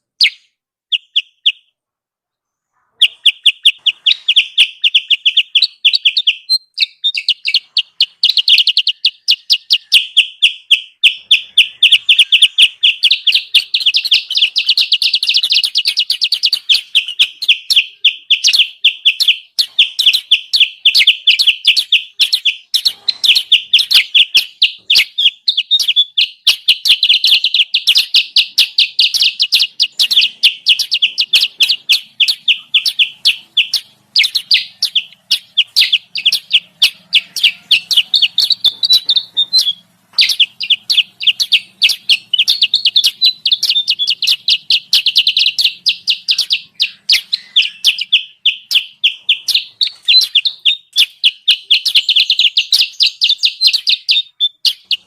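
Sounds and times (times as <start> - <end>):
high chattering bird chirps: 0.0 - 55.0.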